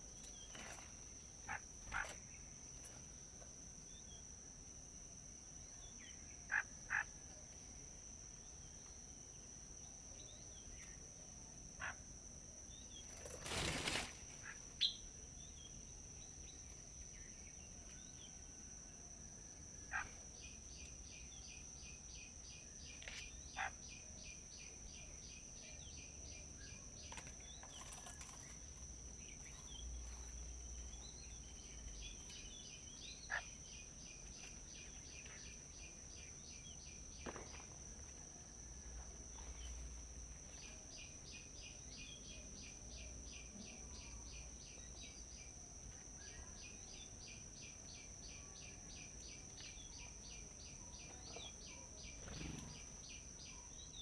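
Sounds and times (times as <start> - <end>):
high-pitched insect drone: 0.0 - 54.0
rustling: 13.1 - 14.3
bird chirps: 13.8 - 16.6, 46.2 - 54.0.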